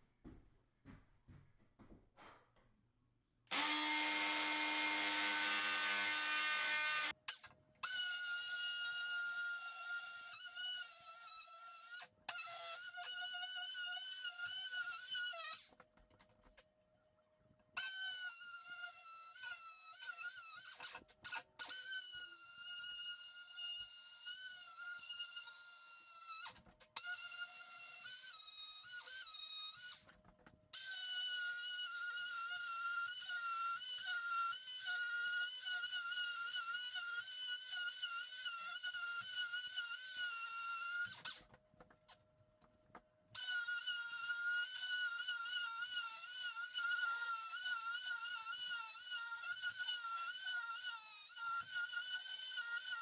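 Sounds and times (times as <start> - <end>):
power tool cutting drywall: 3.5 - 15.7, 30.8 - 41.4, 43.4 - 53.0.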